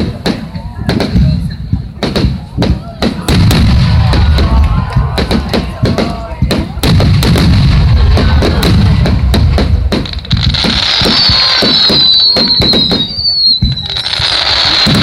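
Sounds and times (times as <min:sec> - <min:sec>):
deep rumble of booms: 0:00.0 - 0:11.5
fireworks bangs and crackles: 0:00.0 - 0:15.0.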